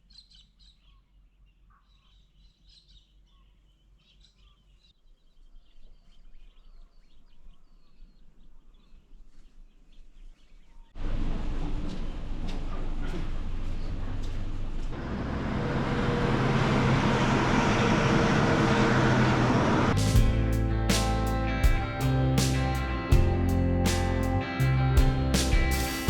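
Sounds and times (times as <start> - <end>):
faint birds: 0.0 - 11.0
vehicle road and engine noise: 11.0 - 26.0
guitar music: 19.9 - 26.0.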